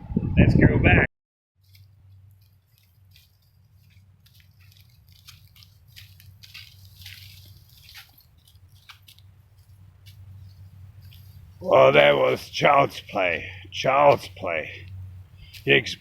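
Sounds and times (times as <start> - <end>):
footsteps crunching: 1.6 - 16.0
low steady hum: 1.6 - 16.0.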